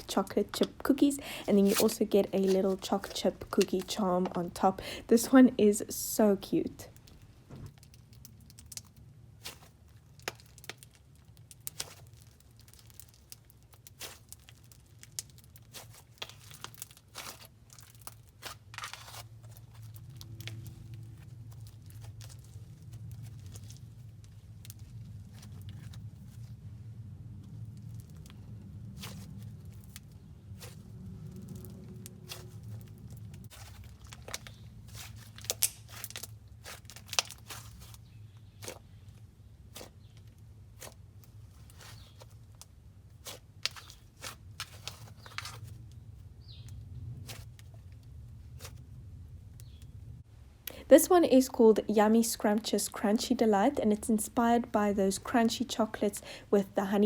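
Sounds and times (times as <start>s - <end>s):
sticky slime crackles and pops: 6.7s - 26.6s, 27.3s - 48.8s
steady low hum: 19.2s - 36.8s.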